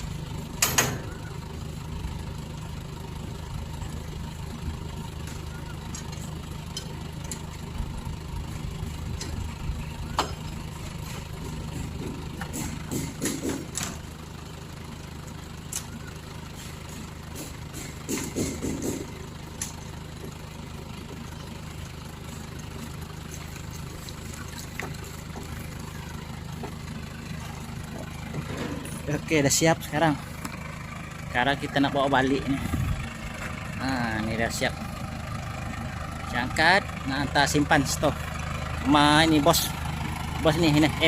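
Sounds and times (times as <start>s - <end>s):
lorry engine idling: 0.0s - 41.0s
sharp knocks and clanks: 0.6s - 1.2s, 11.7s - 14.0s, 16.9s - 19.8s.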